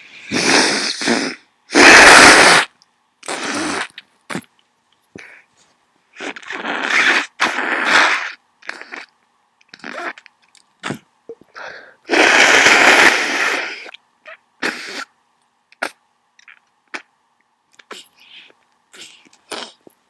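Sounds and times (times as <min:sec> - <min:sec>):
person sneezing: 0:09.8 - 0:10.2.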